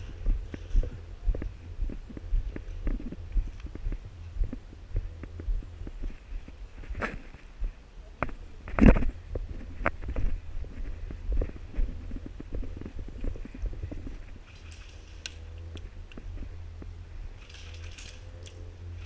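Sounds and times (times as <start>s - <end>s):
footsteps: 0.0s - 19.0s
steady low rumble: 0.0s - 19.0s
gear rustling: 17.3s - 19.0s.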